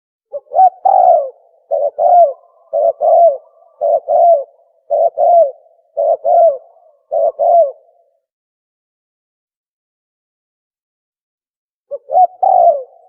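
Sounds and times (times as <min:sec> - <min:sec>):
dove call cooing: 0:00.3 - 0:08.3, 0:11.9 - 0:13.0.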